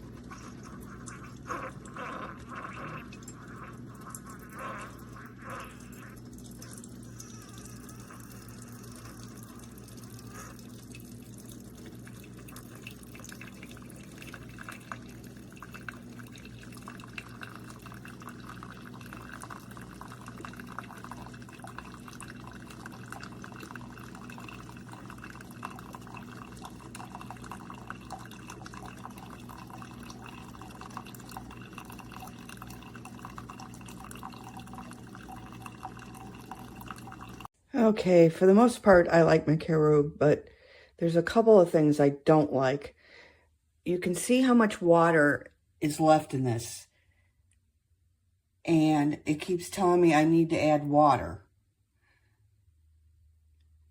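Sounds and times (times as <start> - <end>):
coffee dripping into cup: 0.0 - 37.5
coffee maker humming: 0.0 - 40.0.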